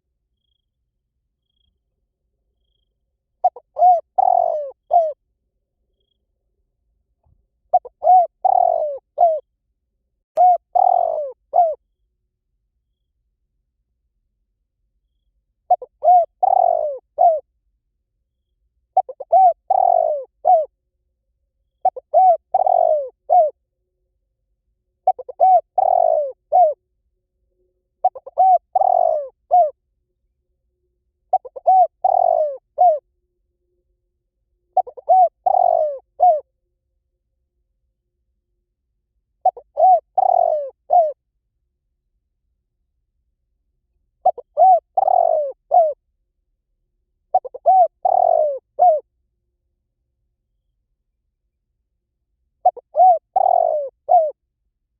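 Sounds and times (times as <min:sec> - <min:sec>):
dove cooing: 0:03.4 - 0:05.2, 0:07.7 - 0:09.5, 0:10.4 - 0:11.8, 0:15.7 - 0:17.4, 0:19.0 - 0:20.7, 0:21.8 - 0:23.6, 0:25.0 - 0:26.8, 0:28.0 - 0:29.8, 0:31.3 - 0:33.0, 0:34.8 - 0:36.5, 0:39.4 - 0:41.2, 0:44.2 - 0:46.0, 0:47.3 - 0:49.0, 0:52.6 - 0:54.4.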